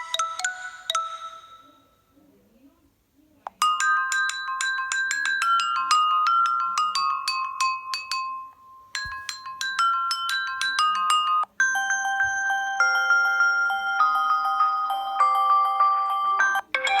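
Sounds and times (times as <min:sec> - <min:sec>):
phone ringtone melody: 0:00.0 - 0:01.7, 0:09.0 - 0:09.9, 0:11.6 - 0:17.0
ringtone with long held tones: 0:00.0 - 0:01.9, 0:08.4 - 0:17.0.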